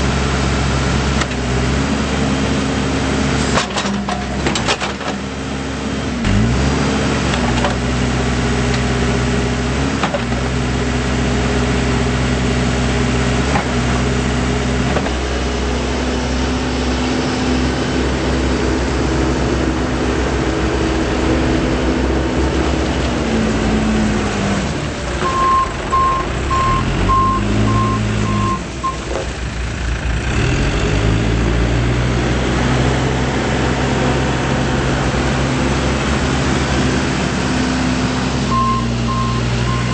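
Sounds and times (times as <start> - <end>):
diesel engine running: 0.0 - 39.9
reverse alarm beeping: 25.2 - 29.0, 38.5 - 39.9.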